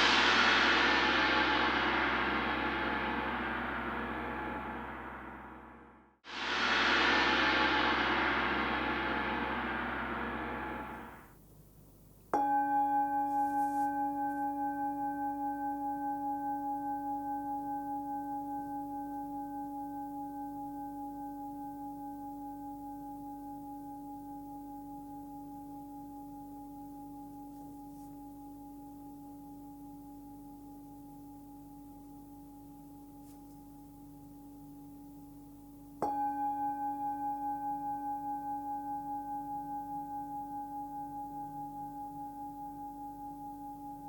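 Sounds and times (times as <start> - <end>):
singing bowl ringing: 12.4 - 35.3, 36.0 - 44.0.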